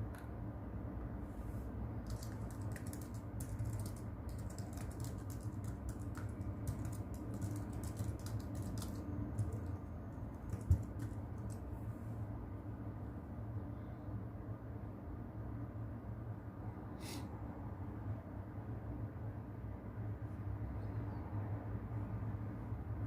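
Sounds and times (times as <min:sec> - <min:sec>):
low brown noise rumble: 0:00.0 - 0:23.0
keyboard typing clicks: 0:02.0 - 0:11.6.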